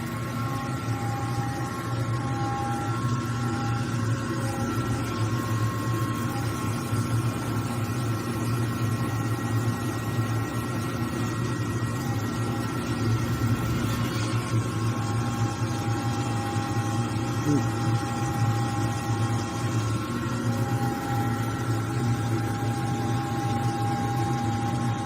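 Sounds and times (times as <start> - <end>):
machine whining tones: 0.0 - 25.0.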